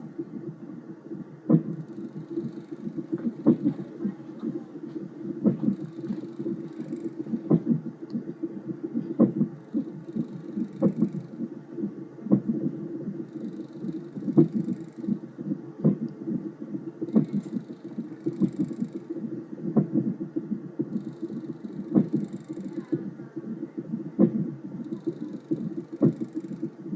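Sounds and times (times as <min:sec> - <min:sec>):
whooshing heartbeat pulse on monitor: 0:00.0 - 0:26.9.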